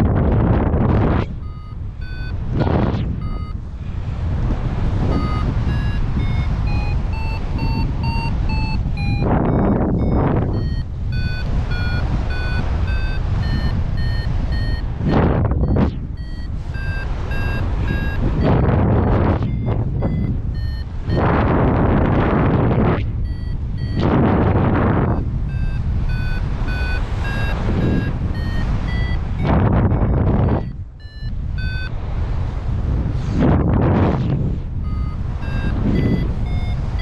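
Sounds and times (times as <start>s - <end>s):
variometer beeping: 0.0s - 3.8s, 4.4s - 32.0s, 34.8s - 37.0s
wind buffeting microphone: 0.0s - 37.0s.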